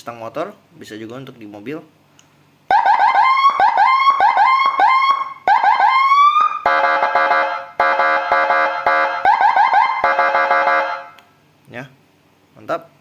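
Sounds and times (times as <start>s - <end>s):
electronic siren chirps and horn tone: 2.7s - 11.2s.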